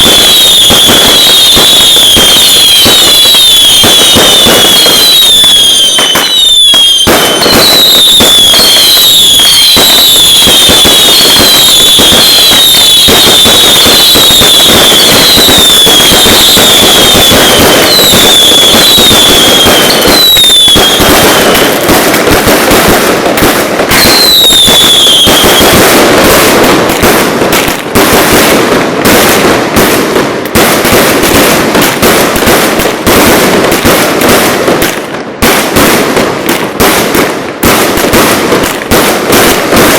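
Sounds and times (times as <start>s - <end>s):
firework whistles sliding down: 0.0s - 21.9s, 23.9s - 26.2s
firework bangs: 0.0s - 39.9s
fireworks crackling: 0.0s - 39.9s.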